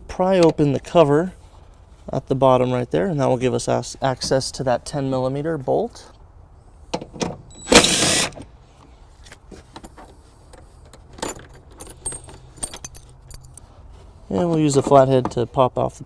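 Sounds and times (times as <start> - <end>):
tools clicking and clinking: 10.9 - 13.6.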